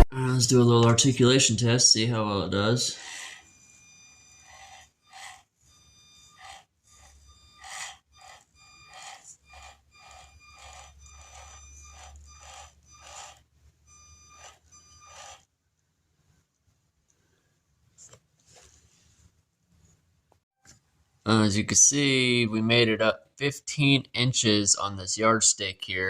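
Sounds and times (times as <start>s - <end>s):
small electric motor whining: 2.7s - 15.5s.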